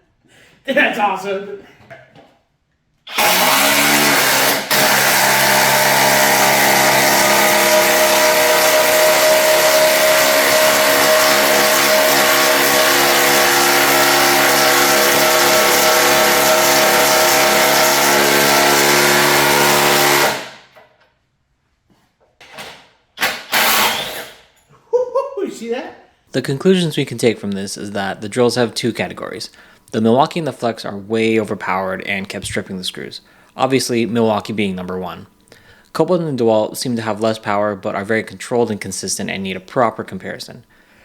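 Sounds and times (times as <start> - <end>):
cordless impact driver running: 3.1 - 20.6, 23.2 - 24.5.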